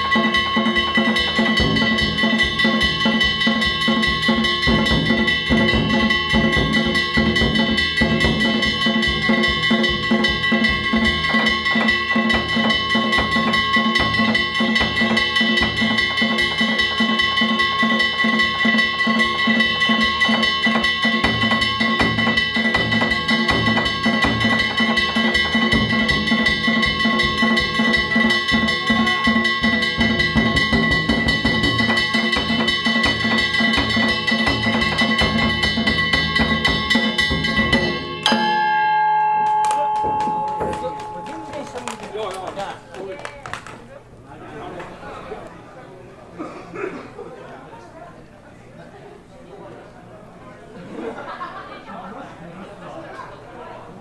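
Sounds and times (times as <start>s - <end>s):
taiko drums beating fast: 0.0s - 38.4s, 39.6s - 43.8s
hand gongs clanging: 0.0s - 43.0s.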